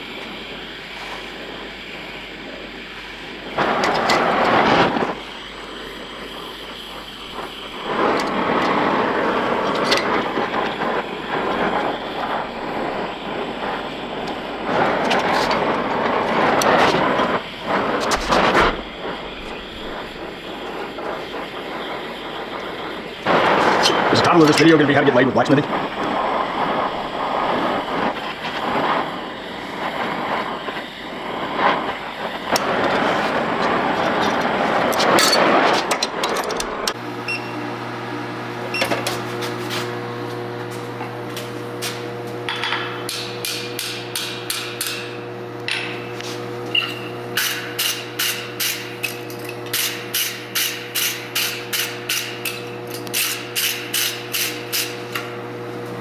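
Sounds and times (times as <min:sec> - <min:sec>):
steady rushing noise: 0:00.0 - 0:37.0
steady hum: 0:00.0 - 0:56.0
hammer striking steel on anvil: 0:41.8 - 0:45.1.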